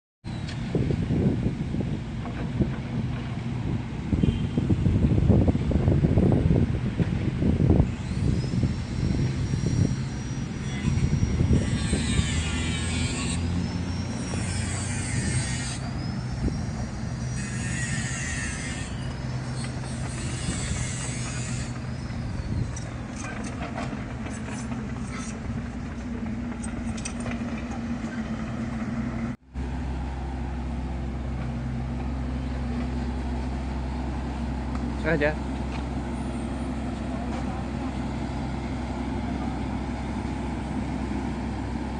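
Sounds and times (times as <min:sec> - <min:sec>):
excavator diesel engine running: 0:00.3 - 0:41.9
hydraulic whine: 0:06.9 - 0:29.9.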